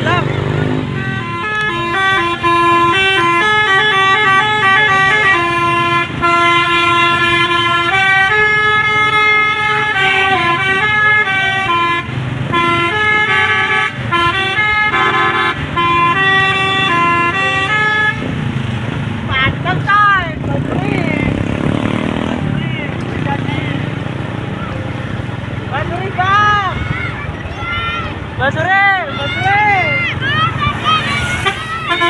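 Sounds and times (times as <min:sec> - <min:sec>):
multi-tone horn melody: 0:00.0 - 0:18.4, 0:30.6 - 0:32.0.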